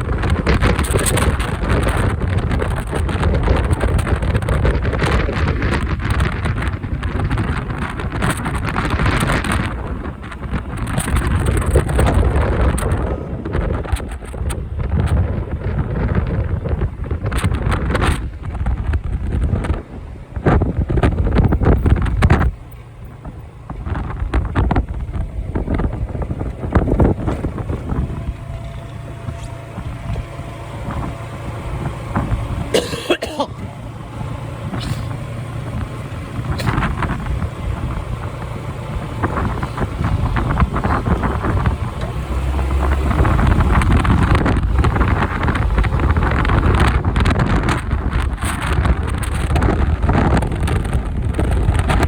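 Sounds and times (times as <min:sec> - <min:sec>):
motorbike engine: 0:00.0 - 0:52.0
road noise: 0:00.0 - 0:52.0
wind buffeting microphone: 0:00.0 - 0:52.0.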